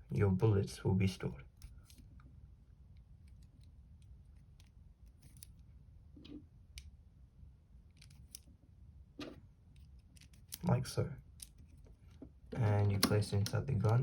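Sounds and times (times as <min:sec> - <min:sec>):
plastic parts clicking: 0:09.8 - 0:10.7.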